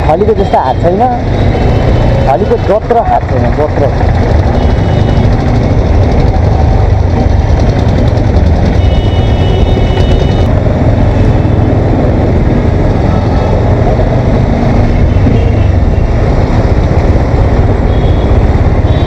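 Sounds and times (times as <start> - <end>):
motorcycle engine rumble: 0.8 - 19.0
wind rushing over microphone: 5.2 - 19.0.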